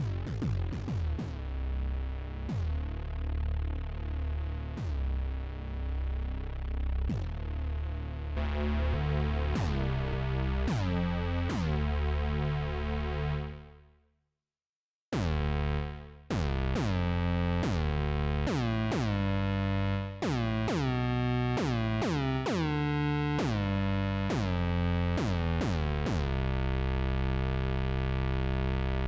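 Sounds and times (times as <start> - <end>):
bass synthesizer notes: 0.0 - 14.0, 15.2 - 29.0.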